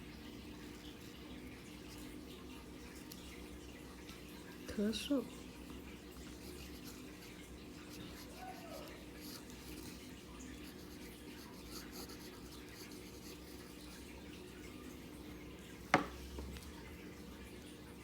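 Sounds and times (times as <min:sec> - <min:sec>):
pen scratching on paper: 0:06.4 - 0:10.0, 0:10.6 - 0:14.0.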